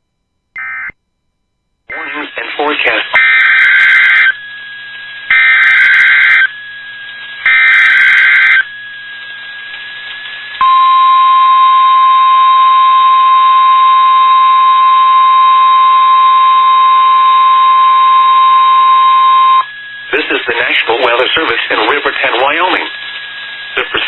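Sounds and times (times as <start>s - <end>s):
steady warning alarm tone: 1.9s - 4.6s, 5.2s - 6.8s, 7.4s - 8.9s, 10.6s - 23.7s
buzzy digital data bursts: 5.3s - 6.5s, 7.5s - 8.7s.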